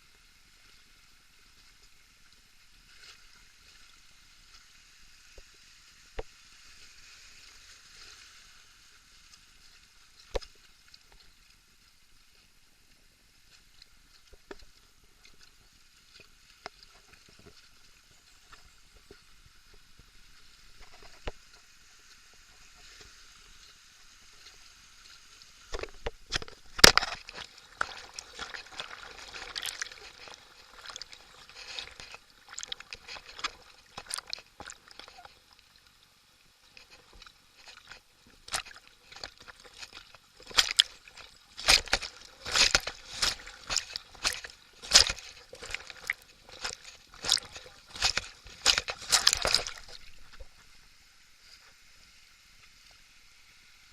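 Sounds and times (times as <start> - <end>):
water splashing against boat: 25.7 - 35.7, 36.7 - 50.9
river water rushing: 37.6 - 50.4.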